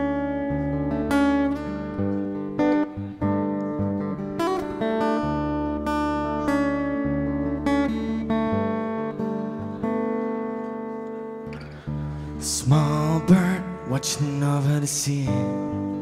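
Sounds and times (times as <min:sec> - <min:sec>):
acoustic guitar chords ringing: 0:00.0 - 0:16.0.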